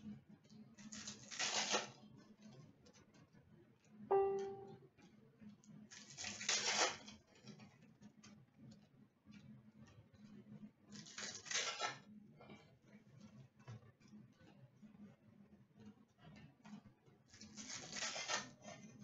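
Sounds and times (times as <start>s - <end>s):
foil packs tearing and crinkling: 1.0s - 1.9s, 6.1s - 7.0s, 11.1s - 11.9s, 17.6s - 18.4s
short pitched chime: 4.1s - 4.8s.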